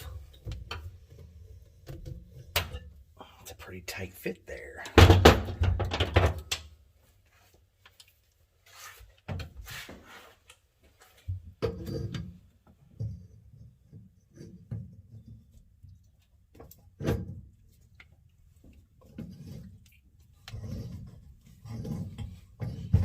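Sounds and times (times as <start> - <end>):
wrenches clunking and scraping: 18.9 - 23.0.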